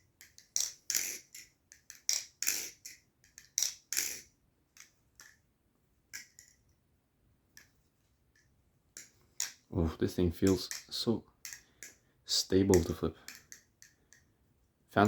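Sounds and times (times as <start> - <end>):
folding knife clicking and clacking: 0.2 - 5.4, 12.7 - 14.3.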